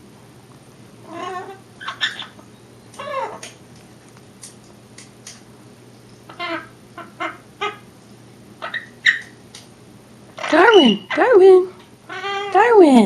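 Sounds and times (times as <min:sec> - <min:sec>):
parrot wavering cries: 0:01.0 - 0:02.4, 0:03.0 - 0:03.6, 0:06.3 - 0:07.9, 0:08.6 - 0:09.4, 0:10.3 - 0:11.4, 0:12.0 - 0:12.8.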